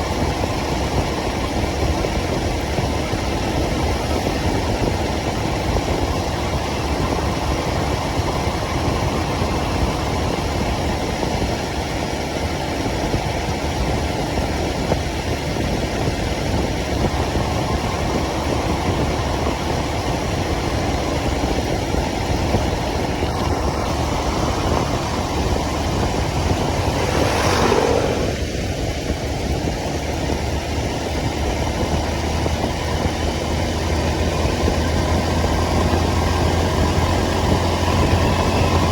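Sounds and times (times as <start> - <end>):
motorcycle engine running: 0.0 - 38.9
passing vehicle sweep: 22.4 - 30.4.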